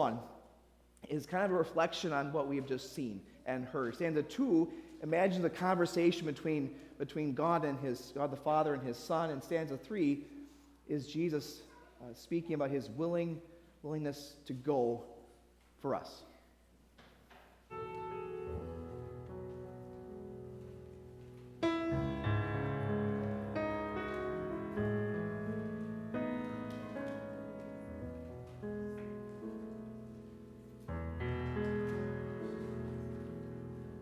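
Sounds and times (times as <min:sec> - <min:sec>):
slow piano chords: 0:17.6 - 0:34.0.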